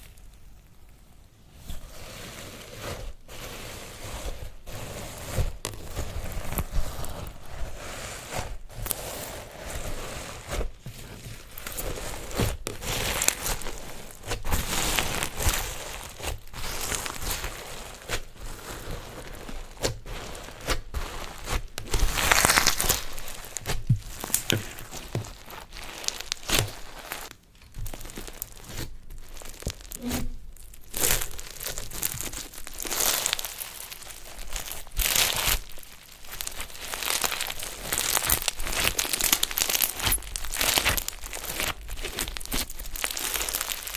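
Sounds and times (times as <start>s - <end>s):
crunchy slime crackling: 0.0s - 43.9s.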